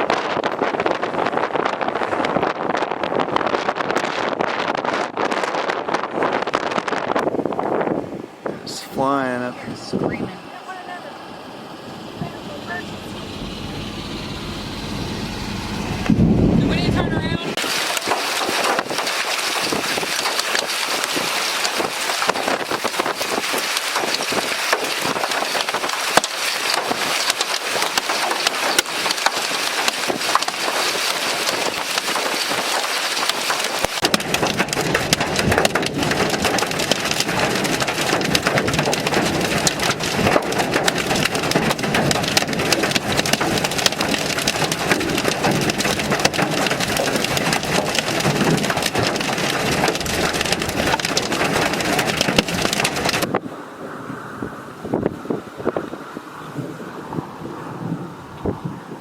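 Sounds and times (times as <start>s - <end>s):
deep rushing sound: 8.4s - 17.6s
hail clattering on hard surface: 17.6s - 53.3s
rain hiss: 17.6s - 53.3s.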